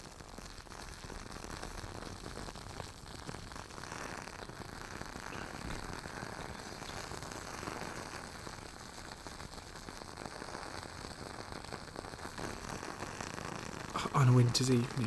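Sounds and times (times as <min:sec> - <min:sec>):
candle wick crackling: 0:00.8 - 0:15.0.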